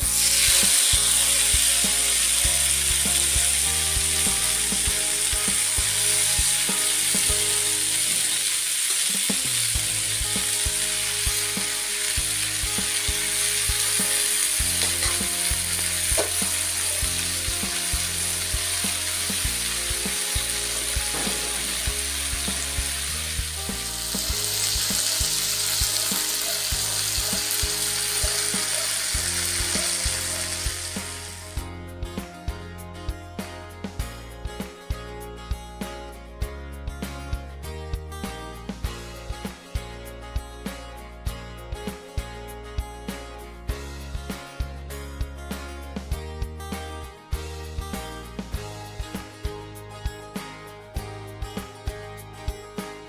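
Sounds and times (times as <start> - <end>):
food sizzling in hot oil: 0.0 - 31.6
background music with steady beat: 0.0 - 53.0.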